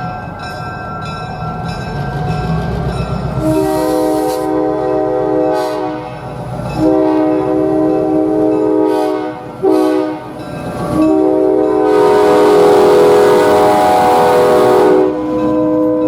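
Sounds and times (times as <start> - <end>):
locomotive air horn blasts: 3.4 - 10.4, 11.0 - 16.0.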